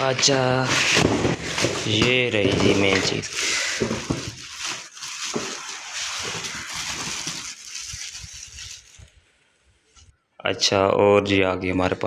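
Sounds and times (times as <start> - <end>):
packaging rustling and crinkling: 0.2 - 9.3.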